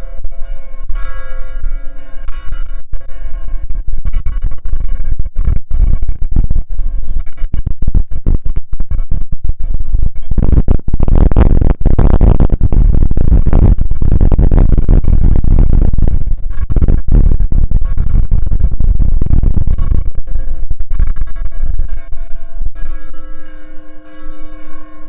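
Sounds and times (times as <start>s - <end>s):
church bells pealing: 23.0s - 25.0s.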